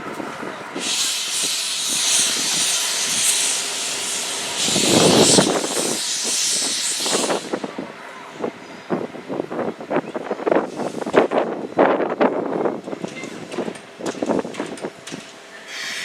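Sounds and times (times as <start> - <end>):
steam locomotive hissing: 0.4 - 9.0, 10.4 - 11.6, 15.5 - 16.0.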